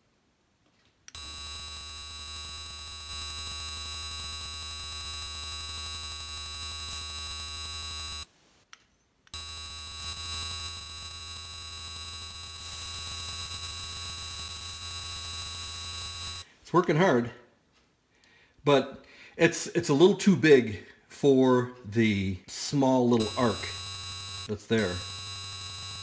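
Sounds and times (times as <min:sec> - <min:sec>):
electric arc lighter buzzing: 0:01.1 - 0:08.3, 0:09.4 - 0:16.5, 0:23.2 - 0:26.0.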